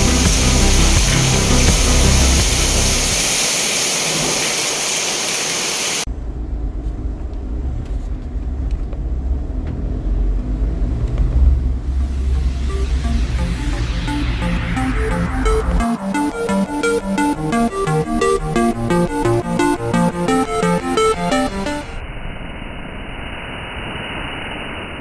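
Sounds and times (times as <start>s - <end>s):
music: 0.0s - 3.2s, 12.0s - 22.0s
vehicle engine rumble: 6.1s - 13.3s.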